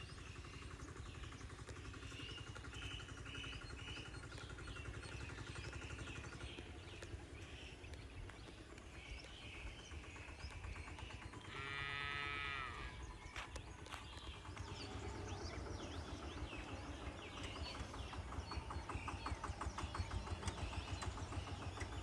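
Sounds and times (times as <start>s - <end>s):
birds chirping: 0.0s - 22.0s
low rumbling background: 0.0s - 22.0s
cow mooing: 11.5s - 13.0s.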